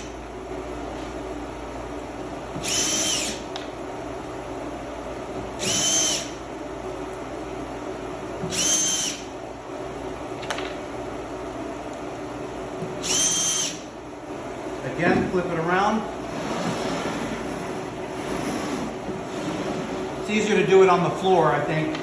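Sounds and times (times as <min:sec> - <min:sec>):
power drill driving screws into wood: 0:02.6 - 0:03.4, 0:05.6 - 0:06.3, 0:08.5 - 0:09.2, 0:13.0 - 0:13.8.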